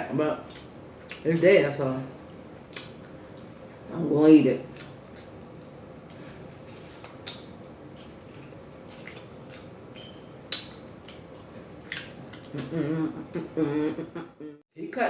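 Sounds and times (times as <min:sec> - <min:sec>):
chewing with wet mouth clicks: 0:00.5 - 0:01.2, 0:04.7 - 0:05.3, 0:07.2 - 0:12.7.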